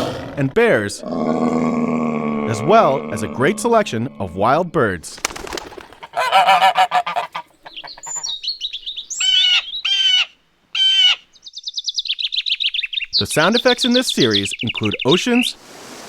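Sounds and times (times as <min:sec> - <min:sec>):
birds chattering and chirping: 0:00.0 - 0:15.6
loud honking bird calls: 0:06.1 - 0:11.3
rapid high bird trill: 0:07.7 - 0:15.5.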